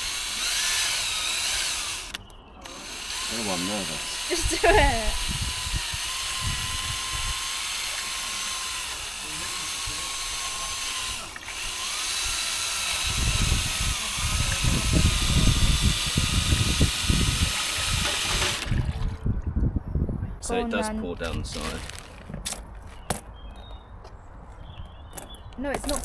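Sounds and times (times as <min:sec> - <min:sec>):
small motor whining: 0:00.0 - 0:19.2.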